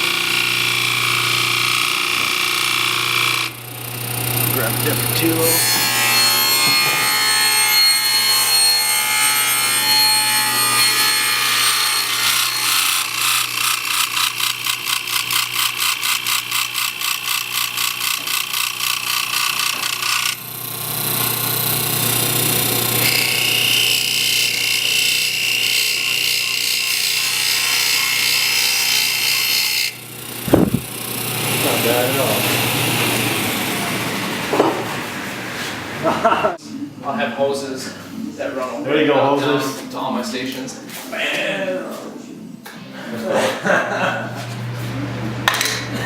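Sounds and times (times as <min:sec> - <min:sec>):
lathe motor hum: 0:00.0 - 0:36.0
turning tool scraping wood: 0:09.4 - 0:20.4, 0:24.3 - 0:30.9.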